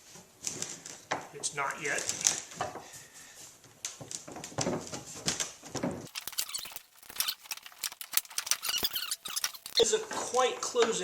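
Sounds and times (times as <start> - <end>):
plastic squeaking and scraping: 4.1 - 10.4.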